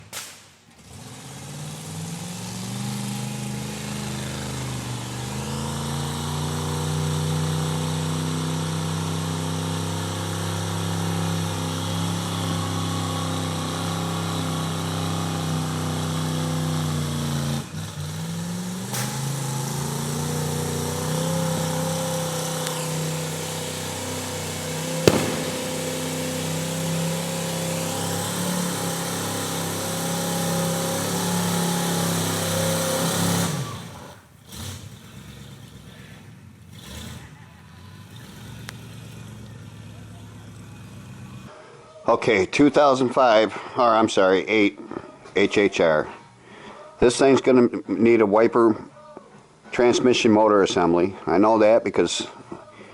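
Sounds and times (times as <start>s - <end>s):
car engine running: 0.8s - 37.2s, 38.0s - 41.5s.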